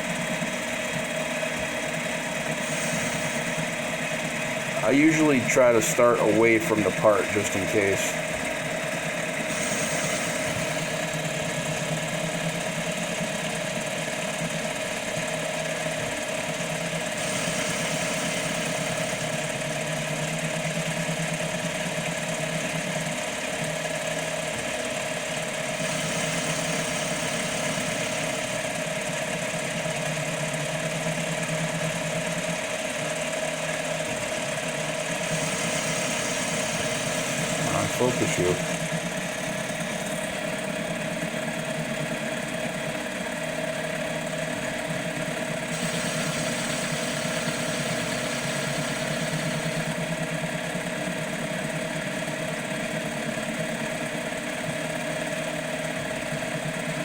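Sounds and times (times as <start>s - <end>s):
stepper motors driving: 0.0s - 13.6s, 16.9s - 21.8s, 25.6s - 41.8s, 45.7s - 51.6s
spindle motor whine: 0.0s - 57.0s.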